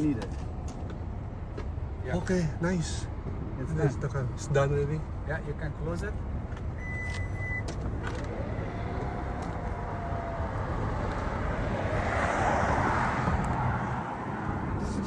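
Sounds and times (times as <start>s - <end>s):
low traffic rumble: 0.0s - 15.0s
vehicle passing: 7.8s - 15.0s.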